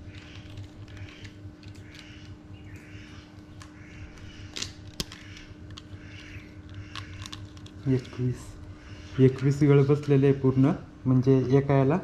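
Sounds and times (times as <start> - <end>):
steady low hum: 0.0 - 12.0
bird harsh call: 0.2 - 9.6.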